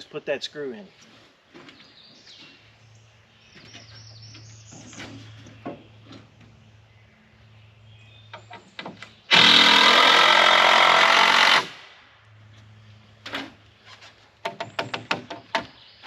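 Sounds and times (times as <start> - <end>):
power drill driving screw: 9.3 - 11.7.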